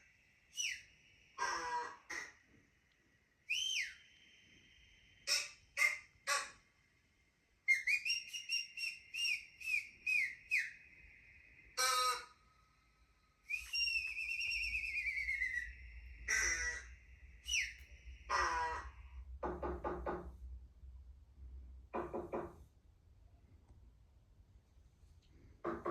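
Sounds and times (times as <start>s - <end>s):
whistled chirps: 0.0s - 19.3s
long whistle sliding down: 3.5s - 5.0s, 13.4s - 16.0s.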